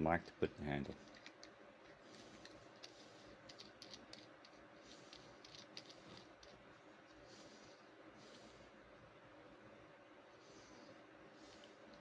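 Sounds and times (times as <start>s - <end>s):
faint clicks and rattles: 0.2s - 6.7s.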